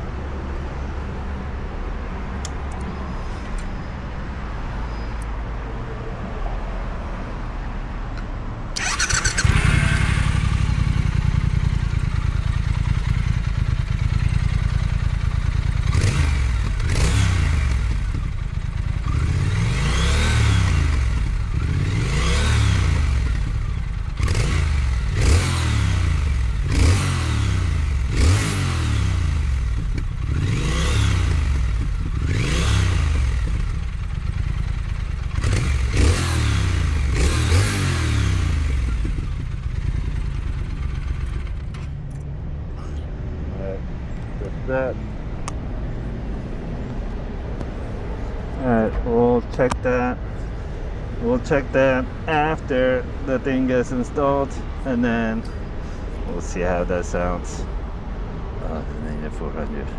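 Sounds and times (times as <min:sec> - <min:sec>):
motorcycle engine revving: 0:08.8 - 0:42.2.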